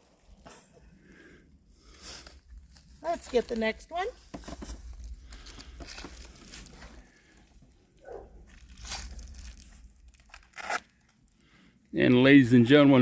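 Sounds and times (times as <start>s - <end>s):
rustling and crinkling handling: 1.9s - 11.5s.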